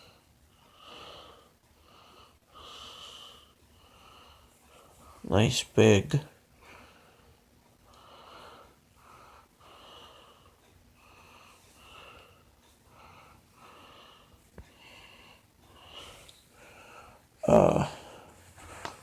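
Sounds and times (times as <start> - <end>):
person breathing softly: 6.6 - 17.3.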